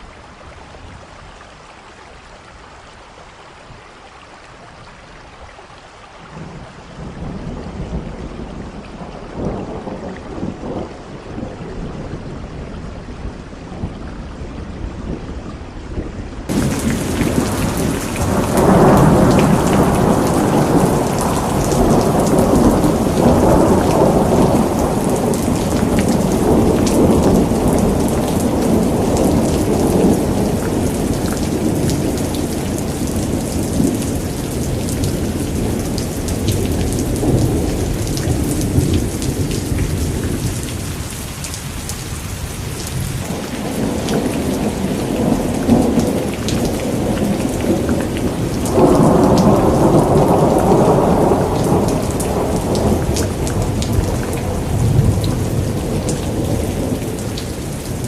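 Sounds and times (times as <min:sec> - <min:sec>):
heavy rain: 0:00.0 - 0:58.0
rolling thunder: 0:16.0 - 0:41.3, 0:42.8 - 0:58.0.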